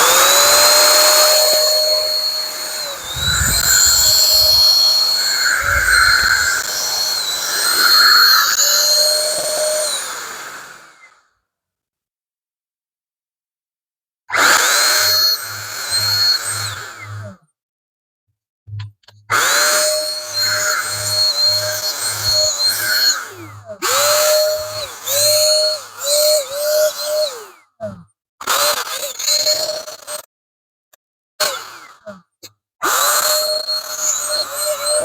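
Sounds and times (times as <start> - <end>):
paint sprayer motor whining: 0.0 - 11.1, 14.4 - 17.3, 19.3 - 27.6, 33.0 - 35.0
spraying air hiss: 2.9 - 8.2.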